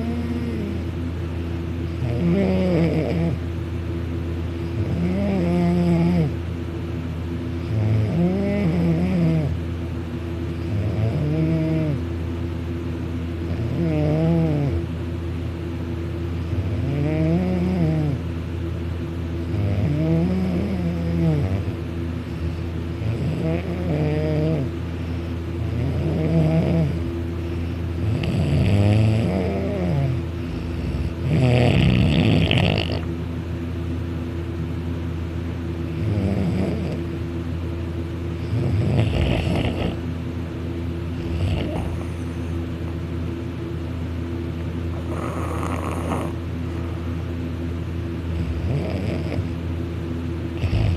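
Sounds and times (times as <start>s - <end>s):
person snoring loudly: 28.0s - 33.1s, 38.5s - 40.0s, 41.2s - 42.3s, 44.9s - 46.4s, 50.6s - 50.9s.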